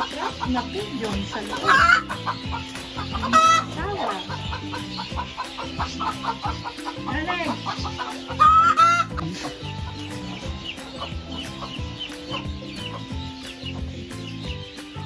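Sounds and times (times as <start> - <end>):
drawn-out hen call: 0.0 - 14.8
background music: 0.0 - 15.0
chicks peeping: 0.0 - 15.0
hens clucking: 0.0 - 15.0.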